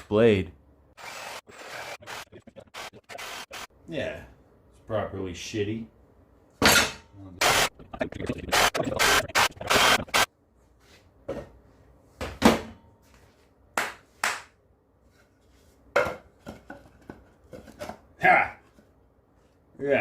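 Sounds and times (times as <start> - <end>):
jigsaw cutting wood: 1.0 - 3.7, 8.6 - 10.3.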